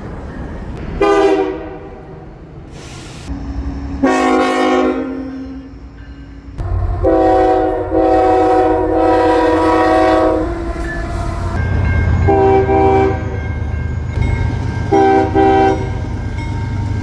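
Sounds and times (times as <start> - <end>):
moving train rumble: 0.0 - 17.0
train horn blasts: 1.0 - 2.1, 3.3 - 5.8, 6.6 - 13.4, 14.9 - 16.2.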